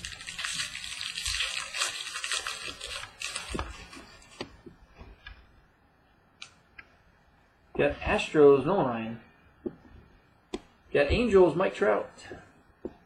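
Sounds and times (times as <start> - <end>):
wrapper crinkling and tearing: 0.0 - 4.4.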